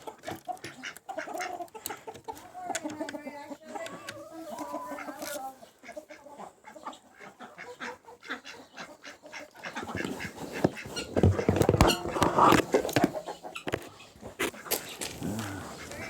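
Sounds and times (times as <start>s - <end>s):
ducks quacking: 0.0s - 16.0s
clicks and knocks: 10.0s - 13.8s.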